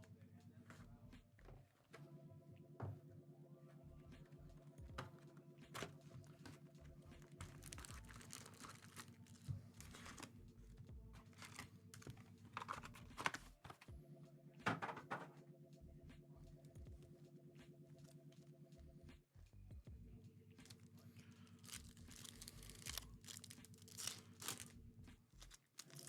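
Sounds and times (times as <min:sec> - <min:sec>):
low steady background tone: 0:00.0 - 0:26.0
wrapper rustling: 0:07.2 - 0:10.4, 0:11.2 - 0:13.8, 0:20.6 - 0:24.7, 0:25.4 - 0:26.0.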